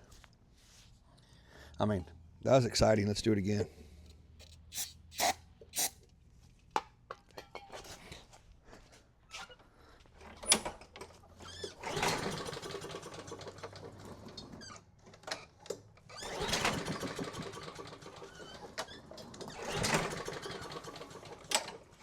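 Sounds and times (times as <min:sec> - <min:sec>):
lawn mower recoil starter pulls: 0:11.5 - 0:14.6, 0:16.1 - 0:22.0.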